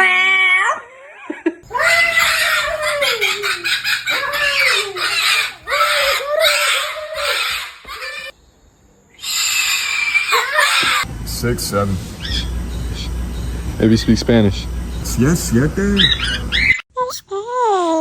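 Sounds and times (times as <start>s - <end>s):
parrot screeching: 1.7s - 8.4s, 9.2s - 11.1s, 12.2s - 12.5s, 16.0s - 16.8s.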